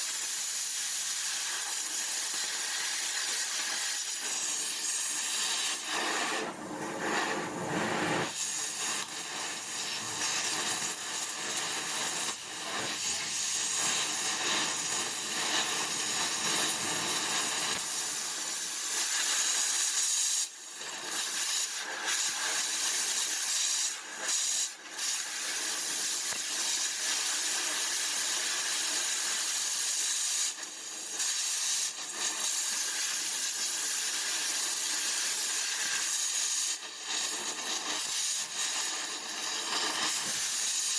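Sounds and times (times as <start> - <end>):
steady hiss: 0.0 - 20.6, 31.2 - 40.9.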